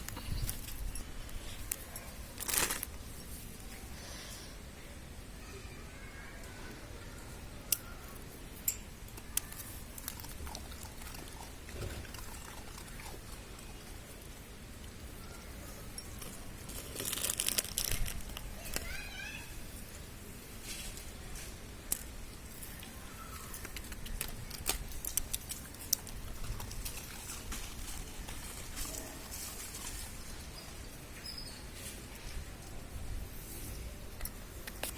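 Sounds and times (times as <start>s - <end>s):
puppies eating and snuffling: 0.0s - 4.7s, 6.8s - 34.9s.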